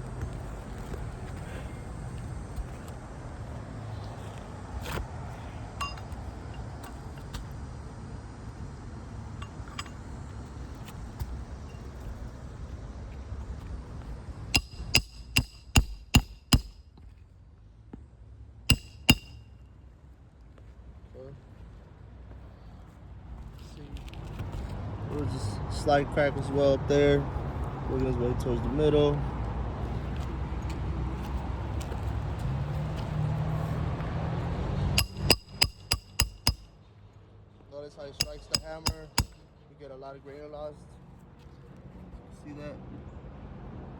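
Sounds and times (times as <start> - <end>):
hammer striking nails: 14.6 - 16.8, 18.7 - 19.5, 35.0 - 36.7, 38.2 - 39.4.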